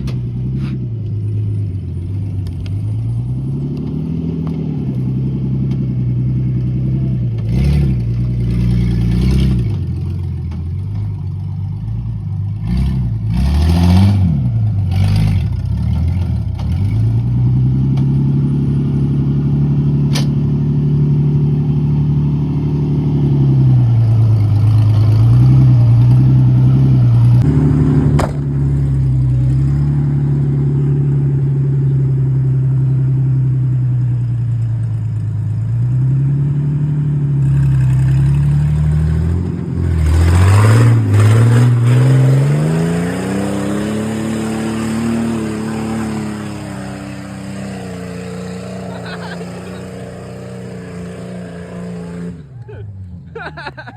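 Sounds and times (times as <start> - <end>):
car engine revving under load: 12.6 - 53.8.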